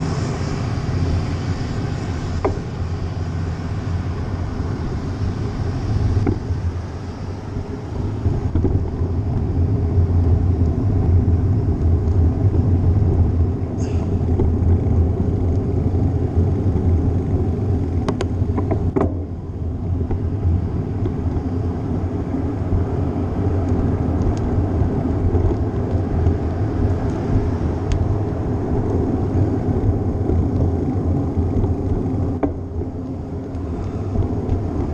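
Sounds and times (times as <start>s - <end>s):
wind and road rumble: 0.0s - 34.9s.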